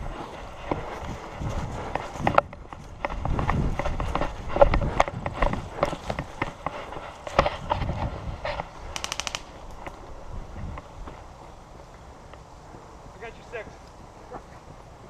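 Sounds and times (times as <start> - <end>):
rapid footsteps: 0.0 - 15.0
airsoft gun full-auto burst: 9.0 - 9.6.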